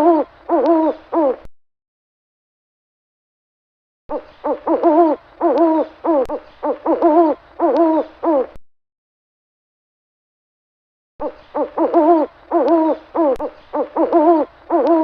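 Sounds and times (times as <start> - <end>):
owl hooting: 0.0 - 1.5, 4.1 - 8.6, 11.2 - 15.0.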